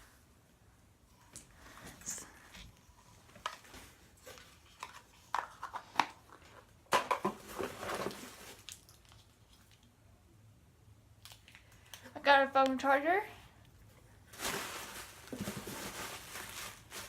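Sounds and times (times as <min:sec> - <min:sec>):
packaging rustling and crackling: 0:07.2 - 0:09.9, 0:14.2 - 0:17.0.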